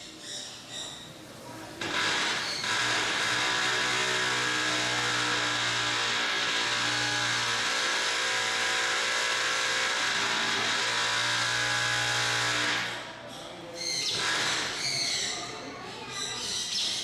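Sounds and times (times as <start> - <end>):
construction machinery running: 1.8 - 13.2.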